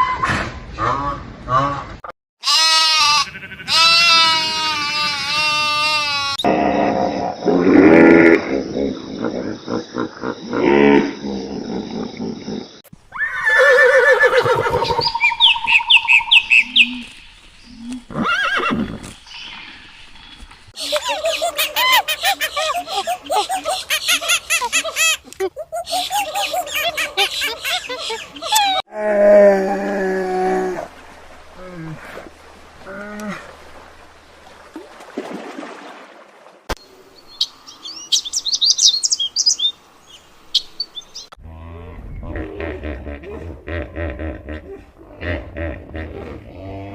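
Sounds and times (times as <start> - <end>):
small bird chirping: 37.2 - 41.3.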